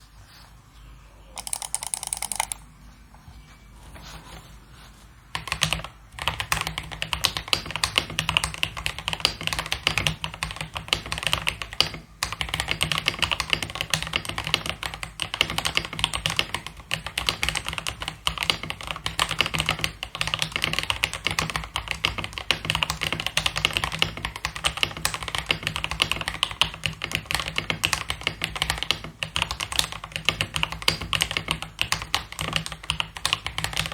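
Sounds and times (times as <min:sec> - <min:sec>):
mechanical keyboard typing: 0:01.4 - 0:02.7, 0:22.2 - 0:33.9.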